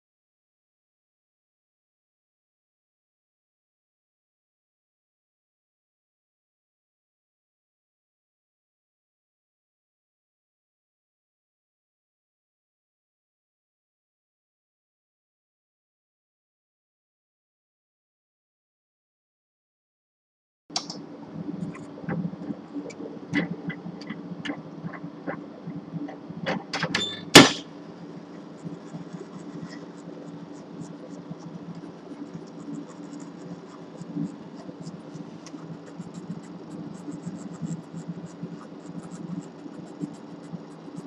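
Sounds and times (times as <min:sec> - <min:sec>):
machine hum: 0:20.7 - 0:41.0
loud clunk: 0:26.5 - 0:27.7
faint ticking: 0:27.8 - 0:41.0.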